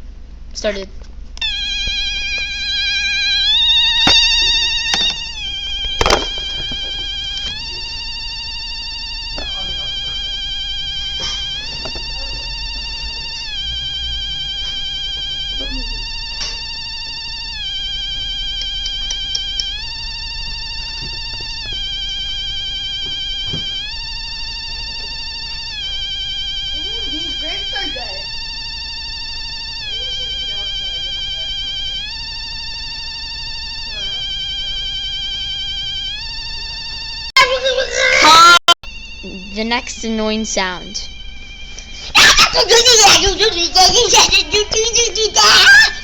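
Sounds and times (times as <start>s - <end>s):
electronic warbling alarm tone: 1.4s - 46.0s
sharp knocks: 5.8s - 7.6s.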